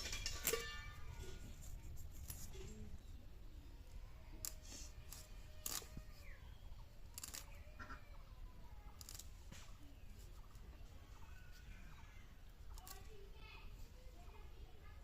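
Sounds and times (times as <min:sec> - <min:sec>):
faint wavering bird calls: 0:02.6 - 0:13.2.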